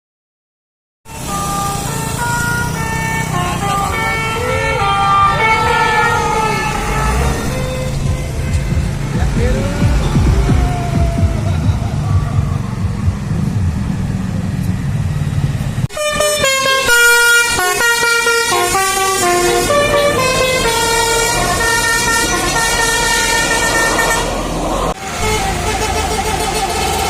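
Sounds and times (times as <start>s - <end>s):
bus horn melody: 1.1s - 11.2s, 15.9s - 27.0s
low engine rumble: 3.2s - 15.9s.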